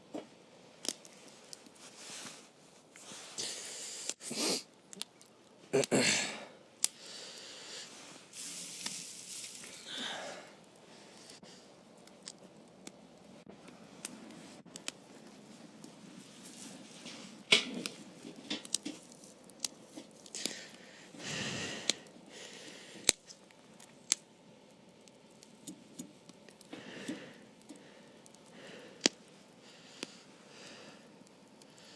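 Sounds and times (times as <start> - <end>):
campfire crackling: 0.7 - 31.9
low rustle: 7.9 - 11.7.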